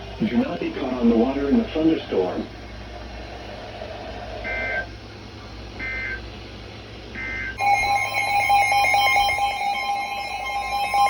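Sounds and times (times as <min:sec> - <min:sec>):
loud steady alert tone: 0:07.2 - 0:11.0
warbling data bursts: 0:07.2 - 0:11.0.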